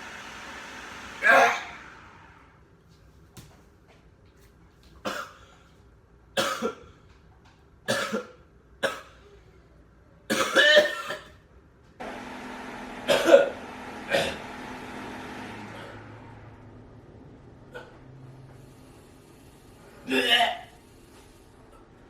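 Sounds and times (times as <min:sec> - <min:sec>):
person coughing: 0:05.1 - 0:05.5, 0:06.4 - 0:06.8, 0:07.9 - 0:09.3, 0:10.3 - 0:11.4, 0:13.1 - 0:14.4, 0:20.1 - 0:20.7.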